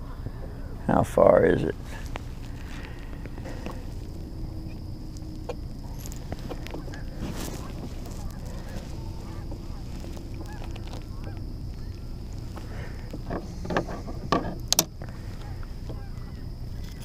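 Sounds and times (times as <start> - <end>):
rumble of wind and water: 0.0 - 17.0
waterfowl honking: 1.9 - 14.3, 15.0 - 17.0
sharp clicks and knocks: 13.1 - 15.1.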